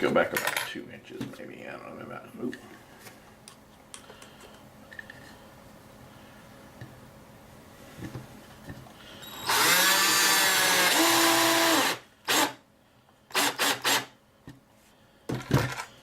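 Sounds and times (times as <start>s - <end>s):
power drill driving screw into wood: 9.3s - 12.6s, 13.3s - 14.1s.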